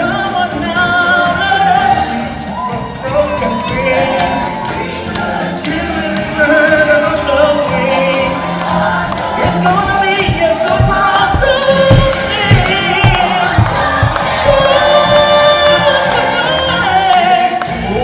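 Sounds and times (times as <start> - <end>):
choir-like backing vocals: 0.0 - 18.0
stage-show music with singing: 0.0 - 18.0
low drum beats: 8.6 - 16.0.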